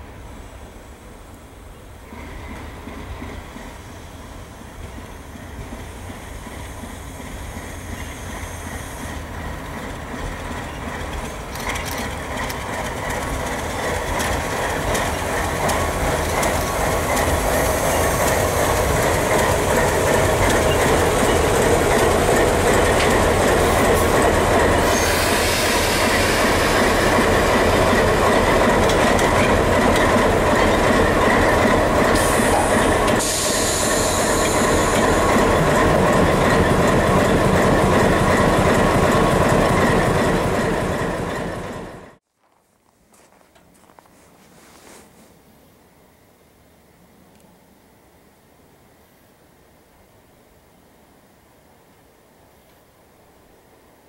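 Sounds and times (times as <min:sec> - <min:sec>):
diesel locomotive engine rumble: 0:00.0 - 0:42.2
train wheels on rails: 0:00.0 - 0:45.3.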